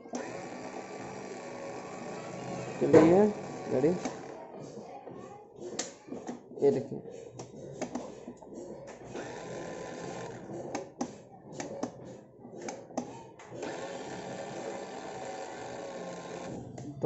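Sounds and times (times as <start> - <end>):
electric motor whirring: 0.1 - 4.4, 13.6 - 17.0.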